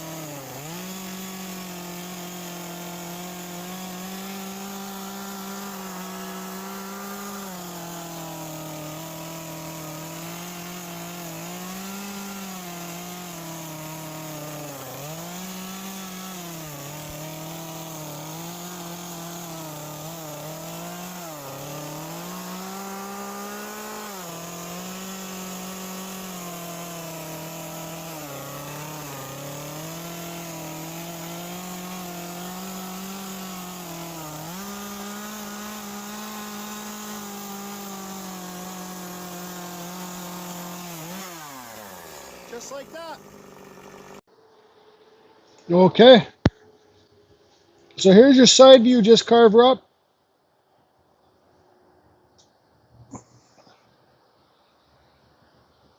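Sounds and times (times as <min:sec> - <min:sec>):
chainsaw cutting wet wood: 0:00.0 - 0:44.3.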